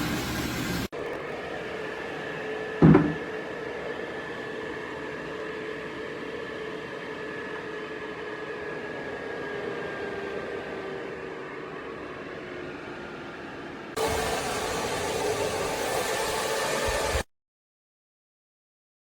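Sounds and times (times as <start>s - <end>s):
duct fan humming and whining: 0.0s - 17.2s
loud thump: 2.8s - 3.2s.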